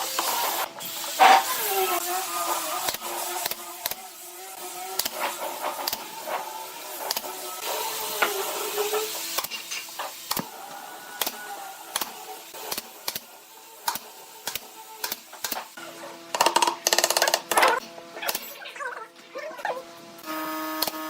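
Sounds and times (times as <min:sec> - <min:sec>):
hissing rasp: 0:00.0 - 0:15.7.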